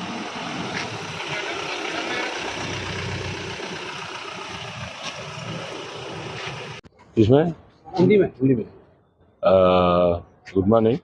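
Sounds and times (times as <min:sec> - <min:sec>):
vehicle engines running: 0:00.0 - 0:06.9.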